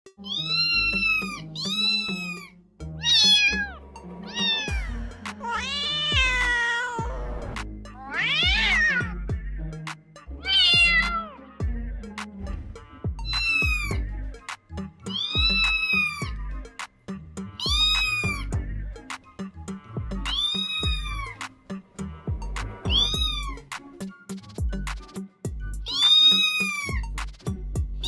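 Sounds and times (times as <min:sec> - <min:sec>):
kitten meowing: 0:00.2 - 0:07.1, 0:08.0 - 0:09.2, 0:10.4 - 0:11.4, 0:13.3 - 0:13.9, 0:15.1 - 0:16.4, 0:17.6 - 0:18.5, 0:20.3 - 0:21.4, 0:22.9 - 0:23.7, 0:25.8 - 0:27.0
background music with bass line: 0:00.2 - 0:28.0.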